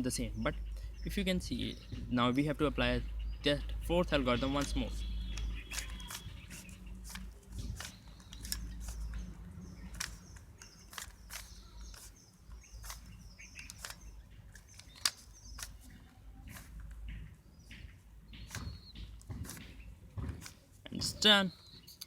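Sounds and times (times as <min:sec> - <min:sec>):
plastic puzzle cube clicking: 0:05.4 - 0:16.9.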